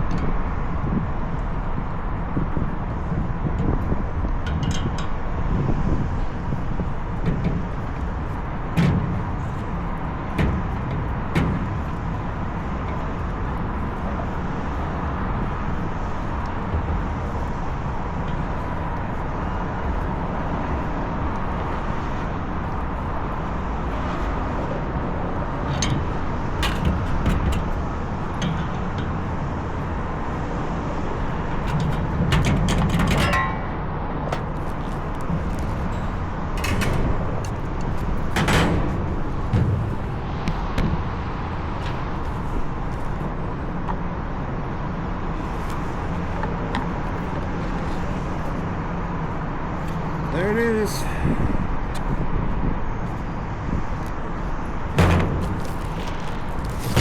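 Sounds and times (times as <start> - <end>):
machinery rumble: 0.0 - 57.0
hand tools knocking on metal: 25.5 - 30.5, 31.3 - 41.0.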